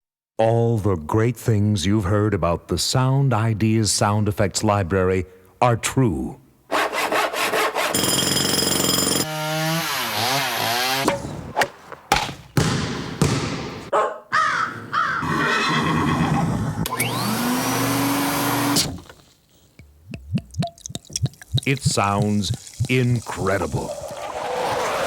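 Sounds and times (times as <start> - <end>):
sharp knocks: 11.0 - 13.9.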